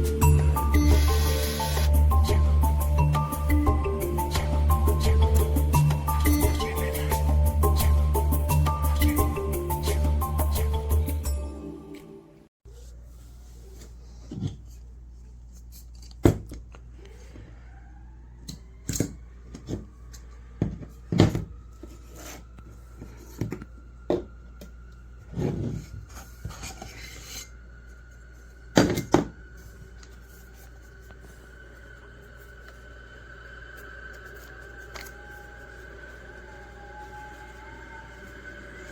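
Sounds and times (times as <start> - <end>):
faint rising tone: 29.4 - 38.9.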